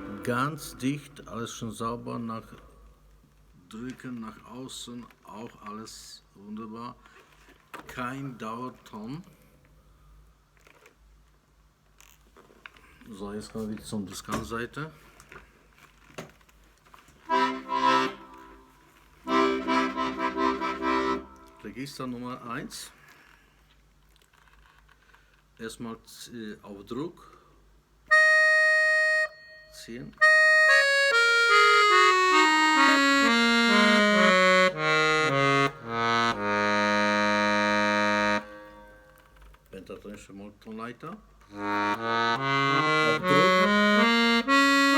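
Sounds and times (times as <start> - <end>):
accordion chords: 0.0 - 1.7, 17.3 - 21.8, 28.1 - 39.3, 41.5 - 44.9.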